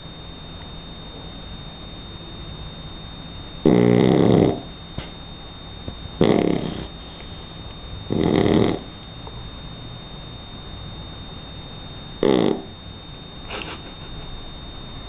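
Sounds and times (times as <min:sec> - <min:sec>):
puppy snoring: 0:03.6 - 0:05.2, 0:06.2 - 0:07.5, 0:08.1 - 0:09.0, 0:12.2 - 0:12.8.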